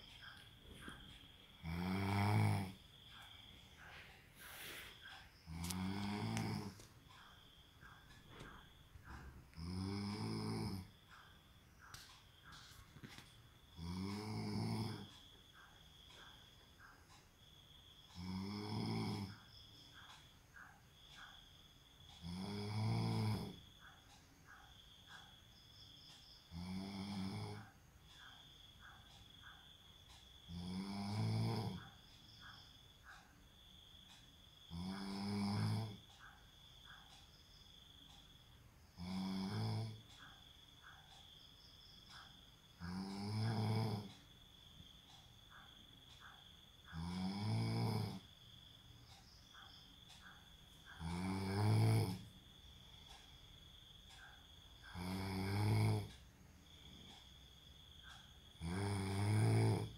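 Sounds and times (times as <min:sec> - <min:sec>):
man snoring: 0:01.6 - 0:03.5, 0:05.5 - 0:06.9, 0:09.1 - 0:11.0, 0:13.7 - 0:15.1, 0:18.2 - 0:19.4, 0:22.2 - 0:23.8, 0:26.4 - 0:27.8, 0:30.4 - 0:31.9, 0:34.6 - 0:36.0, 0:39.0 - 0:40.0, 0:42.8 - 0:44.2, 0:47.0 - 0:48.3, 0:51.0 - 0:52.3, 0:54.4 - 0:56.2, 0:58.6 - 0:59.9.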